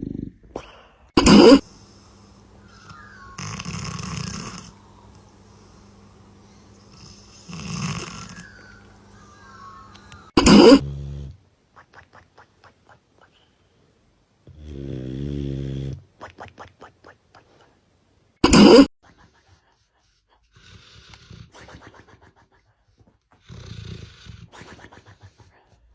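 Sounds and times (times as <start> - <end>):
dogs snoring: 0.0 - 11.5, 14.5 - 16.1, 20.5 - 22.0, 23.3 - 25.3
clicking snuffles: 1.2 - 10.8, 21.0 - 21.3.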